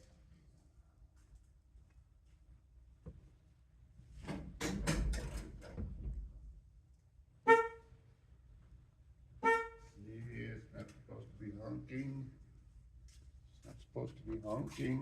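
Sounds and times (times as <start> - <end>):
car horn blasts: 7.4 - 7.9, 9.4 - 10.0.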